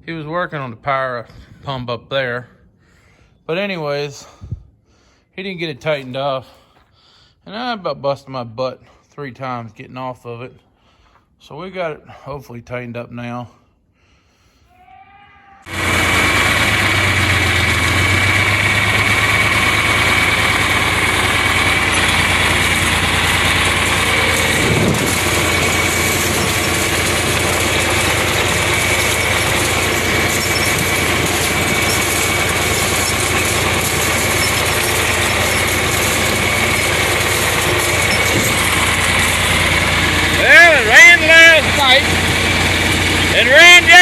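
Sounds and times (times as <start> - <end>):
tractor diesel engine running: 15.6 - 44.0.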